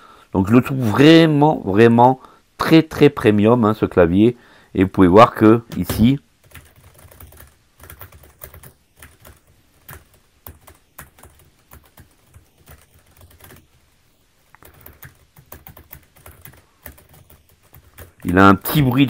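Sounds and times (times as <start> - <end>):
mechanical keyboard typing: 5.7 - 13.7, 14.6 - 19.0.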